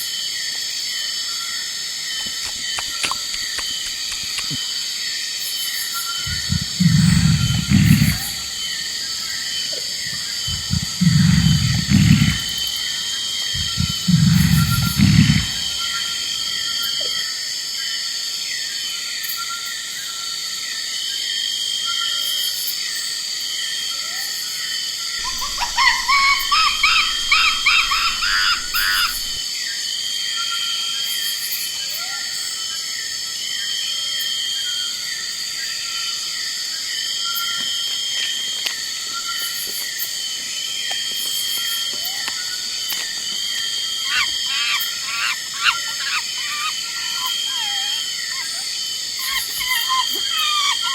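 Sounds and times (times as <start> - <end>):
chorus of insects: 0.0 - 50.9
rapid animal calls: 6.2 - 16.7, 25.2 - 29.4, 43.6 - 50.9
short high calls: 25.2 - 29.4.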